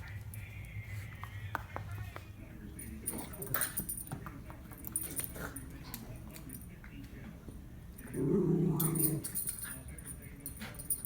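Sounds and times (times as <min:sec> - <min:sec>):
dog growling: 0:08.1 - 0:09.4.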